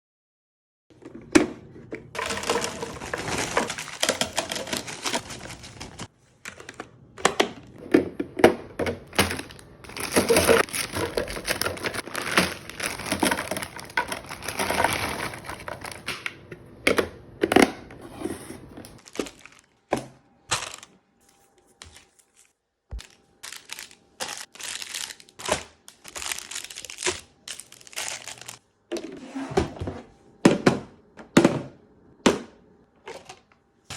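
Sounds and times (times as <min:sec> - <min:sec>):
plastic packaging crinkling: 0:02.2 - 0:06.7, 0:09.1 - 0:16.2, 0:19.0 - 0:19.9, 0:20.5 - 0:28.6.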